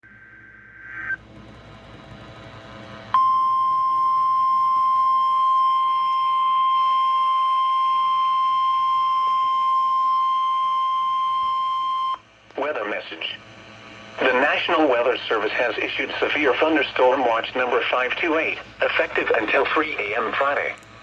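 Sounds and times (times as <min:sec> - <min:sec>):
steady high alarm beep: 0:03.2 - 0:12.2
faint radio static: 0:12.5 - 0:13.5, 0:14.2 - 0:20.8.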